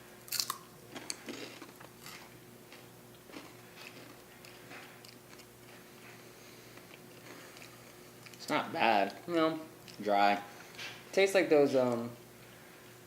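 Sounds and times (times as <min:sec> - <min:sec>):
crackers crunching: 0:00.2 - 0:10.1
soft chewing: 0:00.3 - 0:11.0.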